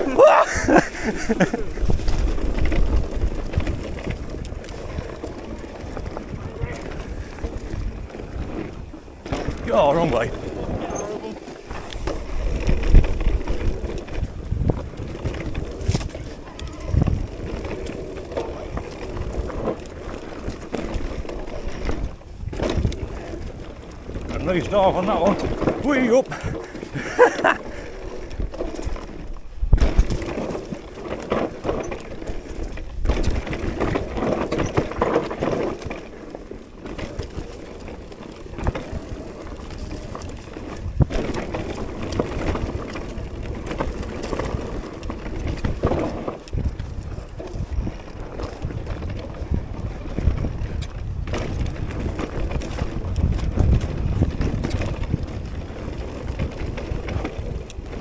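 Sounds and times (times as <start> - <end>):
wind on microphone: 0.0 - 10.8, 11.6 - 19.6, 38.6 - 58.0
bike tyres rolling over dirt: 0.0 - 58.0.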